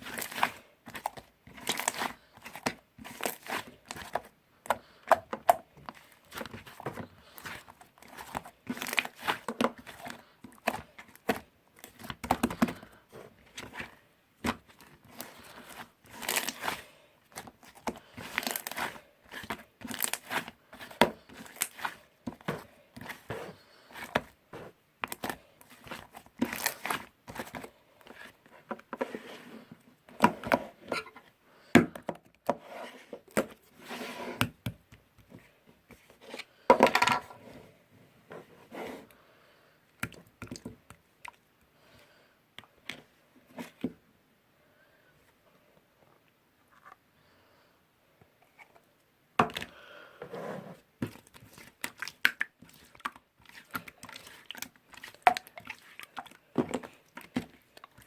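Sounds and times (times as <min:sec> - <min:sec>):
material crinkling and crackling: 0:05.8 - 0:28.8.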